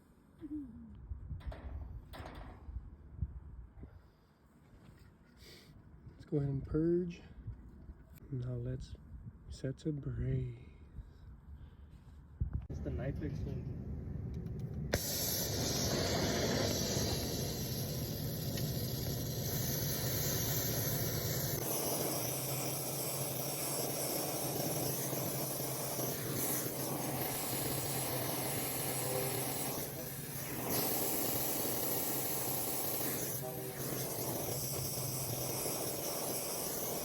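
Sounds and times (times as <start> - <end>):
low rumble: 12.5 - 15.0
torch flame hissing: 14.5 - 37.0.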